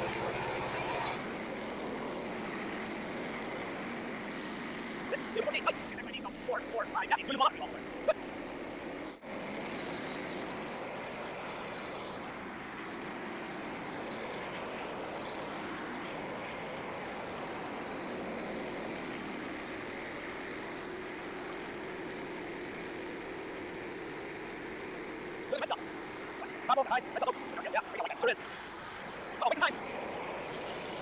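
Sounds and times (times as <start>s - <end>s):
bandsaw sawmill running: 0.0s - 31.0s.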